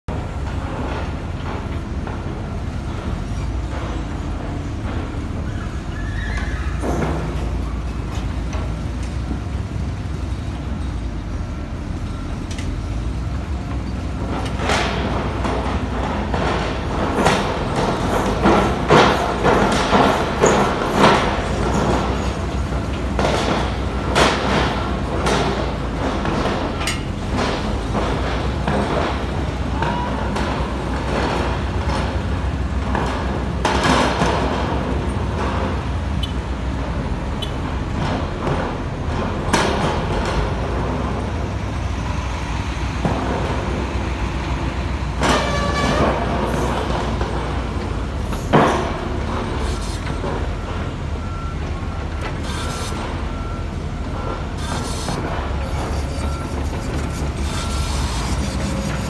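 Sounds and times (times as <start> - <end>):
diesel engine running under load: 0.1 - 59.0
short squeal: 5.4 - 6.9, 54.6 - 59.0.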